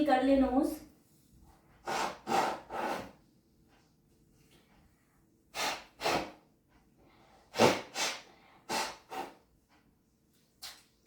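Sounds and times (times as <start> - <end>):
person blowing nose hard: 1.8 - 3.2, 5.5 - 6.5, 7.4 - 9.4.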